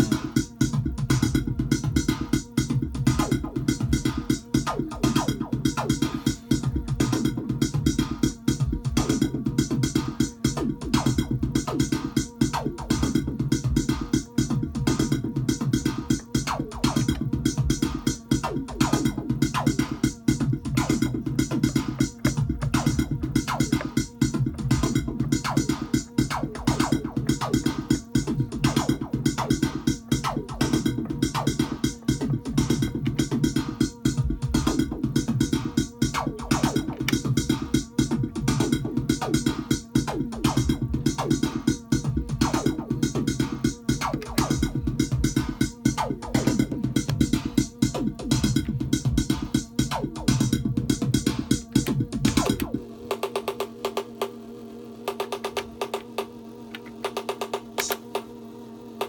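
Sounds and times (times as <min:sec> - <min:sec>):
electronic drum beat: 0:00.0 - 0:54.4, 0:55.0 - 0:58.3
bass line: 0:12.6 - 0:52.8.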